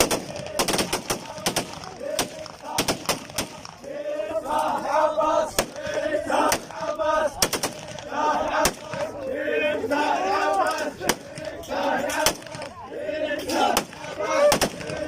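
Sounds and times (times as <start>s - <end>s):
sharp gunshots: 0.0s - 3.9s, 6.4s - 9.1s, 12.2s - 12.7s, 13.7s - 15.0s
men chanting together: 0.0s - 15.0s.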